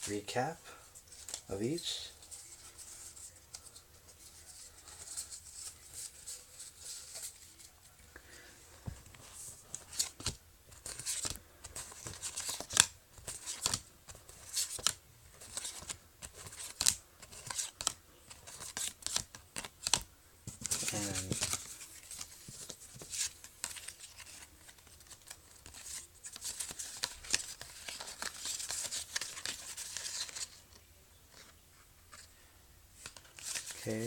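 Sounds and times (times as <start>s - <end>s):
trading cards clicking and brushing: 8.9s - 30.6s, 33.0s - 34.0s.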